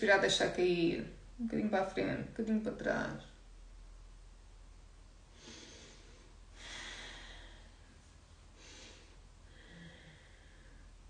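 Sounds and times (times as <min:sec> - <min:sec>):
woman breathing: 0:05.3 - 0:11.0.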